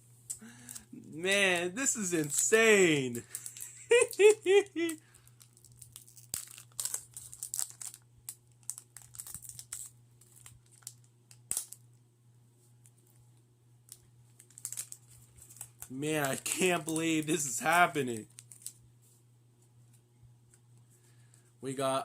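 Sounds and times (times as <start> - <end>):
card packs crinkling: 0.4 - 11.8, 14.4 - 18.8.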